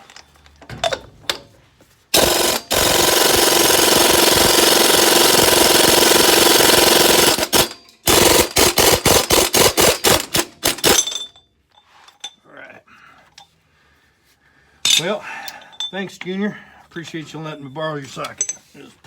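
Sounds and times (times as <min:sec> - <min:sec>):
impact wrench hammering: 0:02.2 - 0:11.3.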